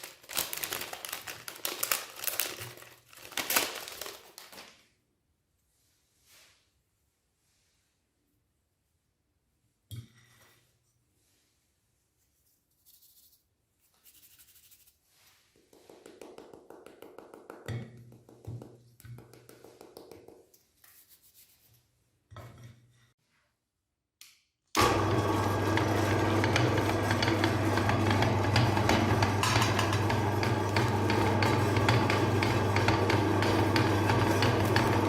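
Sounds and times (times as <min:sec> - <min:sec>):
electric meat grinder running: 0:24.8 - 0:35.0.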